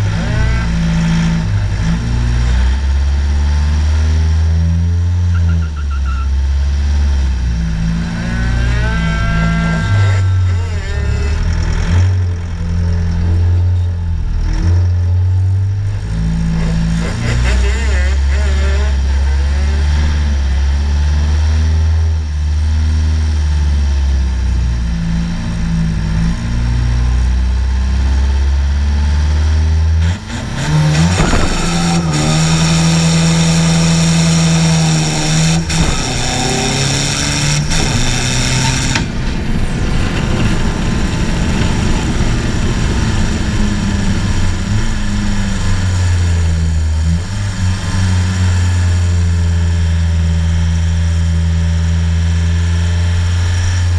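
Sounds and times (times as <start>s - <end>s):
car engine idling and revving: 0.0s - 53.9s.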